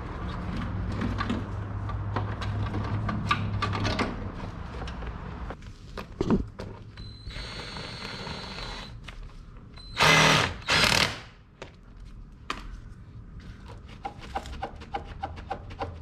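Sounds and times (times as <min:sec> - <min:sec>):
power tool whirring: 0:07.2 - 0:09.0, 0:09.9 - 0:11.3.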